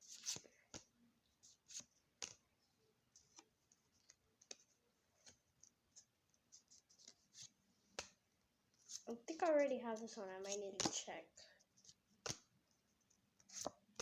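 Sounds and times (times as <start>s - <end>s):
trading cards clicking when flipped: 10.8s - 11.1s, 12.2s - 12.5s.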